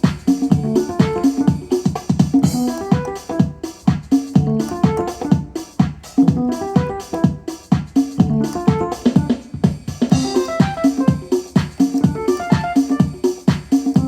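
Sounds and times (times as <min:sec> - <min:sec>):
electric keyboard melody over beat: 0:00.0 - 0:14.0.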